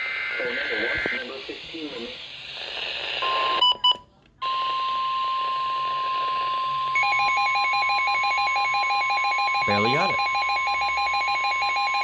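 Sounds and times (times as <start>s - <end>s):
steady warning alarm tone: 6.8s - 12.0s
data tone bursts: 7.0s - 12.0s.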